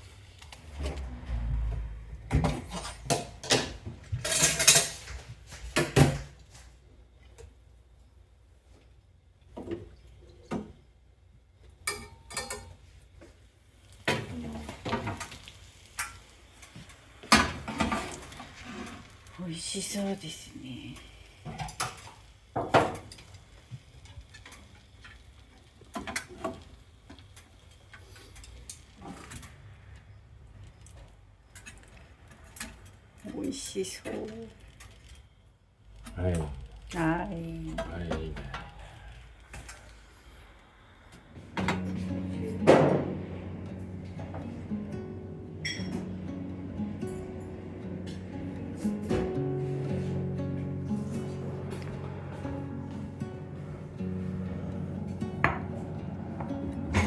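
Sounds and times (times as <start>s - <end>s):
dishes and cutlery clinking: 2.3s - 5.2s, 11.8s - 12.8s, 45.6s - 46.3s.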